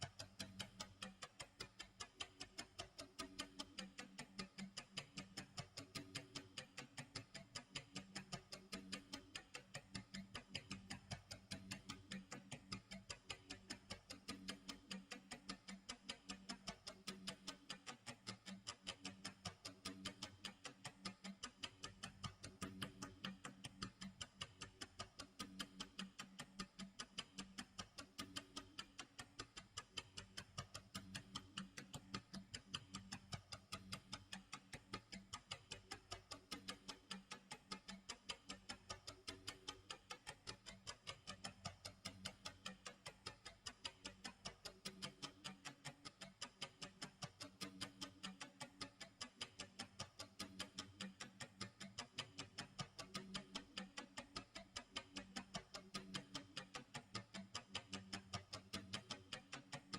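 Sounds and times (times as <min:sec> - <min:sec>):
clock ticking: 0:00.0 - 0:59.9.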